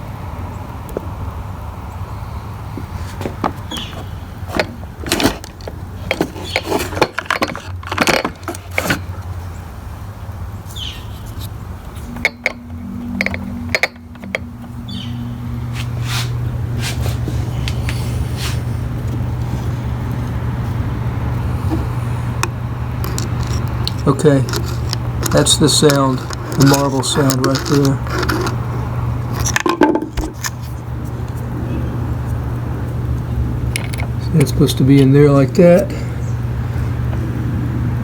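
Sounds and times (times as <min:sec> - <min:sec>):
sharp clicks and knocks: 0:03.2 - 0:09.2, 0:11.2 - 0:14.8, 0:21.7 - 0:28.7, 0:29.3 - 0:30.7
trimmer engine running: 0:11.8 - 0:29.3.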